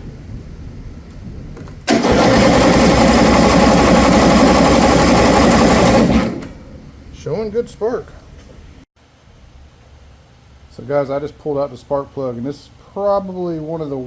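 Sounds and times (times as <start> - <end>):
electric starter cranking engine: 1.8 - 6.8.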